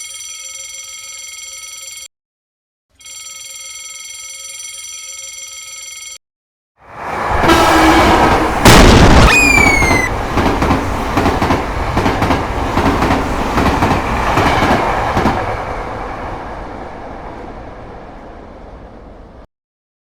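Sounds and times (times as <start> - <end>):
train wheels clicking over rail joints: 7.5 - 15.6.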